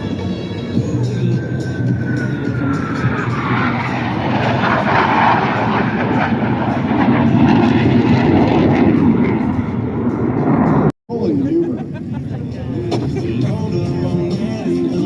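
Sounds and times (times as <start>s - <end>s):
jet engine roar: 0.0s - 13.5s.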